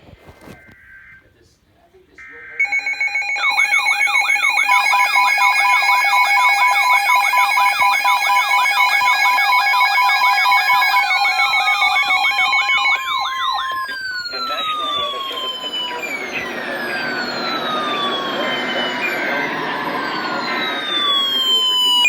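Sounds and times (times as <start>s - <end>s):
warbling siren-like tone: 3.5s - 22.0s
tone sliding downward: 10.1s - 22.0s
steady alert tones: 10.7s - 22.0s.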